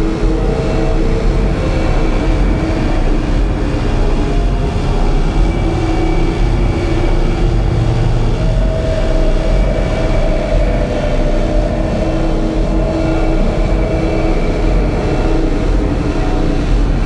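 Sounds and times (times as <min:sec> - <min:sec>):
low rumble: 0:00.0 - 0:17.0
sustained droning tones: 0:00.0 - 0:17.0.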